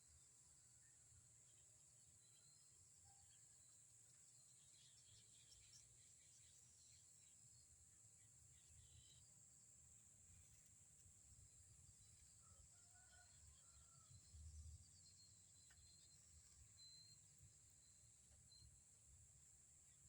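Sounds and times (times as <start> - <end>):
faint bird chirps: 0.8 - 9.4, 12.0 - 19.1.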